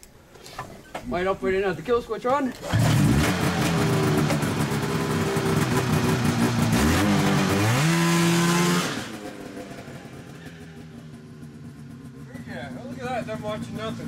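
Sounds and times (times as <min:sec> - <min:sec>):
snowmobile engine revving: 0:02.6 - 0:11.2.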